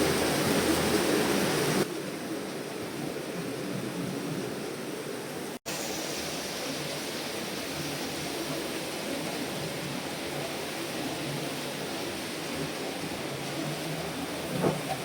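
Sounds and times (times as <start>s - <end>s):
steady rain: 0.0s - 15.0s.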